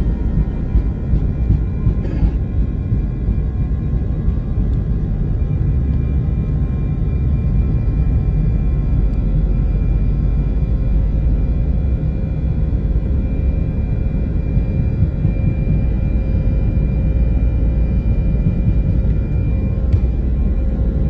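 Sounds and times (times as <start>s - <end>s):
faint steady whining tones: 0.0s - 21.0s
jet engine cabin rumble: 0.0s - 21.0s.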